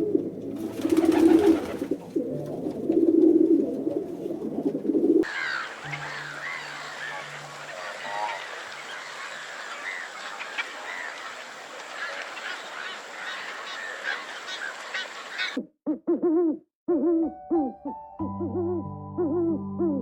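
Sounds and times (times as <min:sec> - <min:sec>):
music: 0:00.0 - 0:04.2, 0:16.9 - 0:20.0
bird hoot-like calls: 0:04.8 - 0:20.0
many birds chirping: 0:05.2 - 0:15.6.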